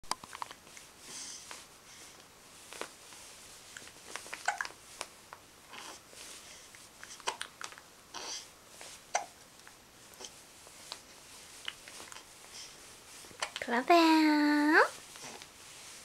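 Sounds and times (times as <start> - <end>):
baby breathing softly: 1.0 - 2.3, 12.0 - 12.9
baby hiccuping: 4.4 - 4.7, 8.1 - 8.4, 9.1 - 9.4.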